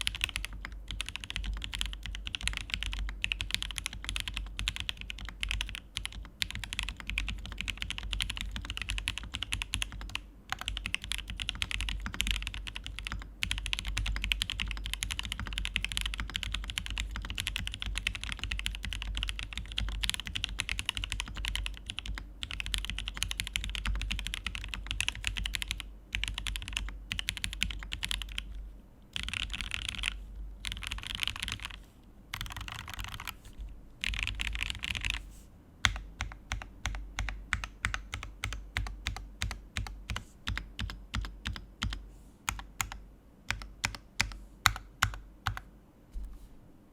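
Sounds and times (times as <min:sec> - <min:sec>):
mechanical keyboard typing: 0:00.0 - 0:33.4, 0:34.0 - 0:35.2, 0:35.8 - 0:45.7.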